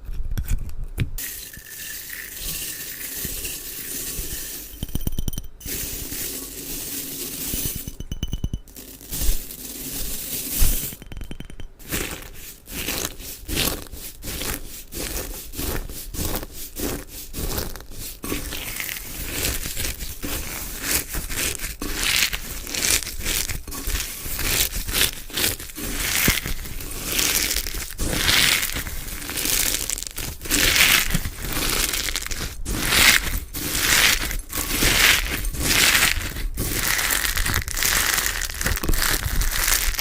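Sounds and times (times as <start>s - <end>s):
slime squished by hand: 21.4s - 40.0s.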